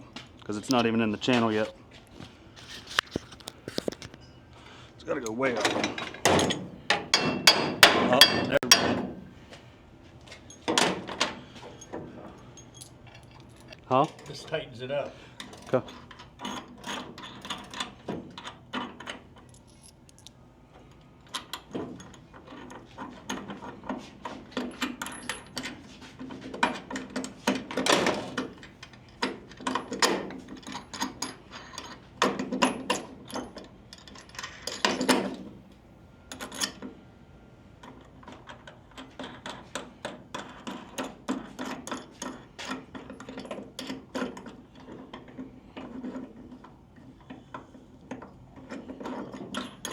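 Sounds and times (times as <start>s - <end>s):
metal hardware clattering: 5.3s - 9.5s, 26.5s - 35.6s.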